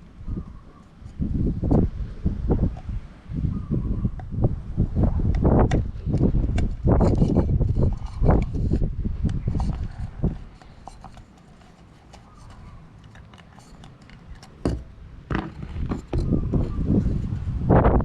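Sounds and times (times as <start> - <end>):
small parts clicking and scraping: 5.3 - 16.7.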